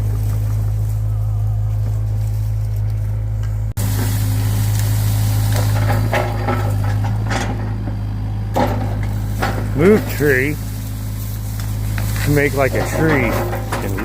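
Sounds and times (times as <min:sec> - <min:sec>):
excavator engine running: 0:00.0 - 0:14.0
tree wood crackling and snapping: 0:00.0 - 0:14.0.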